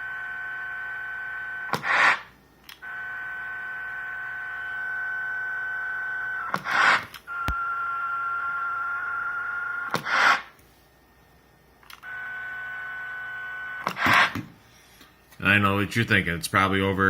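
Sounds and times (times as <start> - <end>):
electronic buzz on radio: 0.0 - 10.6, 12.0 - 14.5
static hiss bursts: 1.7 - 2.3, 6.5 - 7.2, 9.9 - 10.6.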